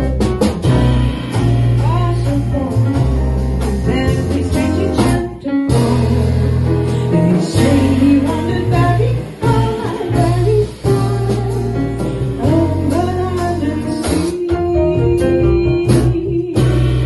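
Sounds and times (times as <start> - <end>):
piano: 0.0 - 17.0
plucked double bass: 0.0 - 17.0
woman singing: 1.8 - 17.0.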